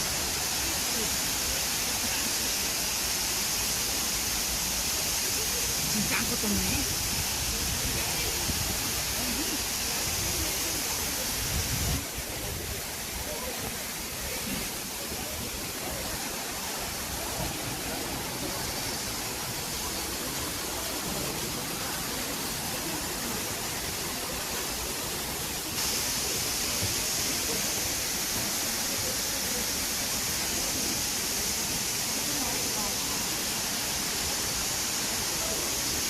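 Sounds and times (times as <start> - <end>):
waterfall roaring: 0.0 - 36.0.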